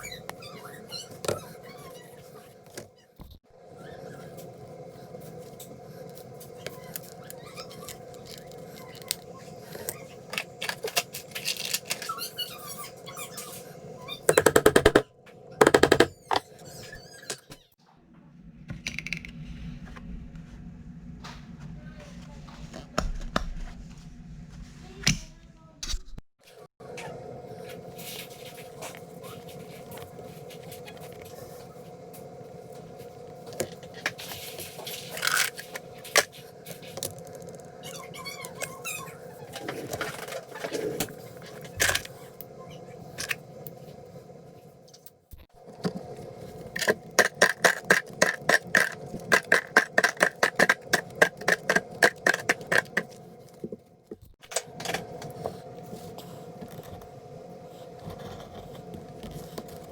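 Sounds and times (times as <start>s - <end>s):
scraping crafting materials: 45.6s - 53.8s.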